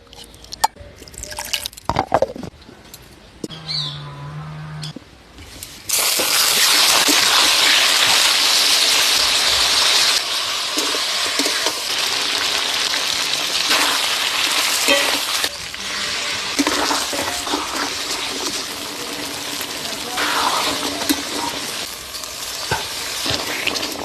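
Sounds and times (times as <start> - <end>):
food sizzling in hot oil: 5.9 - 24.0.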